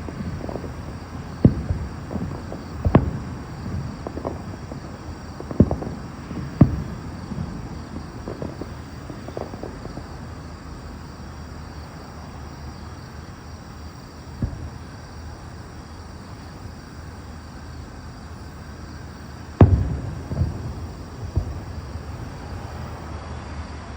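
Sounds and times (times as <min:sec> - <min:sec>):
faint pops: 0:00.0 - 0:10.4, 0:14.4 - 0:15.6, 0:19.6 - 0:23.0
firework boom: 0:00.0 - 0:10.7, 0:14.4 - 0:16.2, 0:19.5 - 0:23.1
low outdoor rumble: 0:00.0 - 0:23.9.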